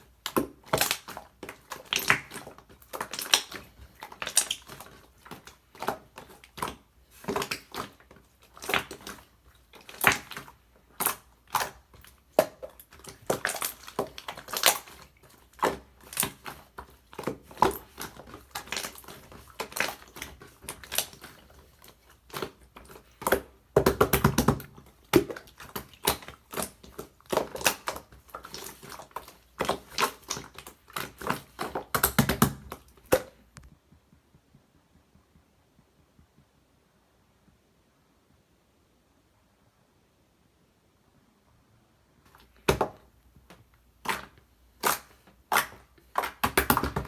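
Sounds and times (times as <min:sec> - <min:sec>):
irregular crunching and crackling: 0:00.0 - 0:35.3.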